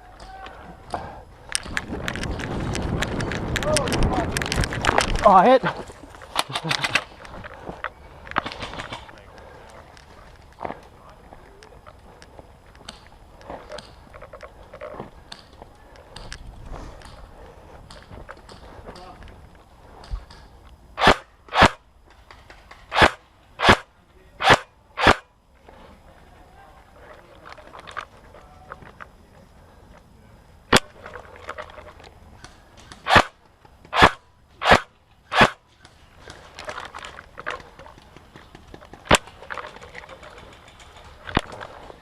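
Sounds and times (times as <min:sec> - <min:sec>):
airsoft gun firing single shots: 0:21.0 - 0:21.8, 0:22.9 - 0:25.3, 0:33.0 - 0:35.6.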